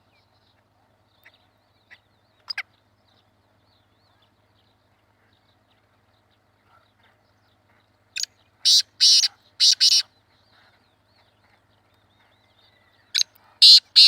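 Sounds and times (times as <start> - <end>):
francolin harsh calls: 8.2 - 10.1, 13.6 - 14.0.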